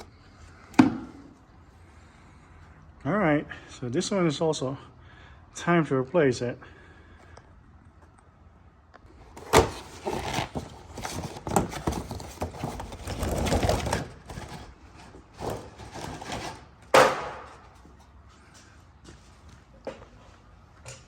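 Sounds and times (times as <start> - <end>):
plastic scraping and rustling: 9.2 - 17.6.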